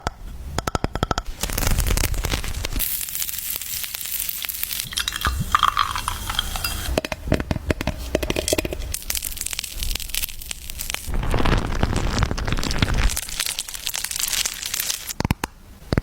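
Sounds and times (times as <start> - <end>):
crackling and crinkling: 1.2 - 16.0.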